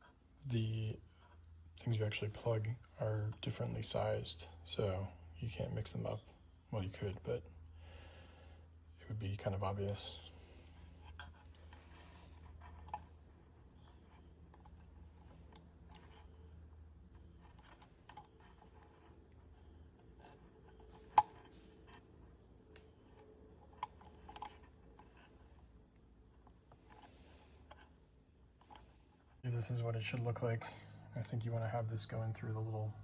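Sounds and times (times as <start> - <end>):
plastic parts clicking and tapping: 22.7 - 25.3.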